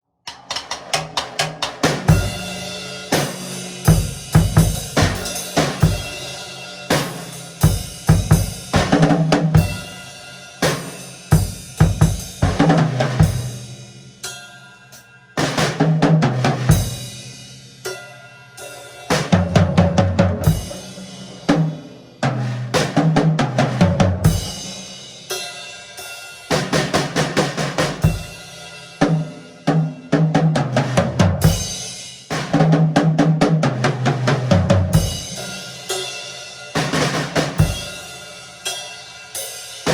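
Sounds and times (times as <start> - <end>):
snare drum: 0.3 - 10.0, 10.6 - 13.6, 15.4 - 17.0, 19.1 - 24.8, 26.5 - 28.4, 30.4 - 36.0, 36.8 - 38.0
tom drum fills: 0.3 - 10.0, 10.6 - 13.7
bass drum: 1.1 - 10.0, 10.8 - 13.7, 19.4 - 24.8, 32.4 - 35.5
cymbal crashes: 1.8 - 15.8.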